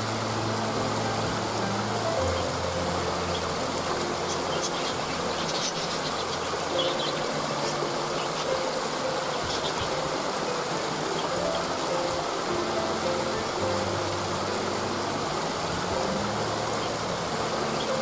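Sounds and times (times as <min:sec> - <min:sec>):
waterfall rushing: 0:00.0 - 0:18.0
high bird chirps: 0:04.2 - 0:08.6.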